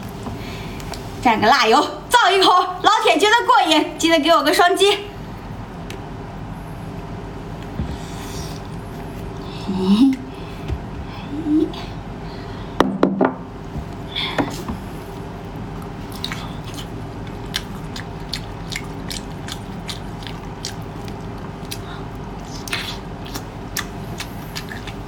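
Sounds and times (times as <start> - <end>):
wet chewing mouth clicks: 15.8 - 25.0.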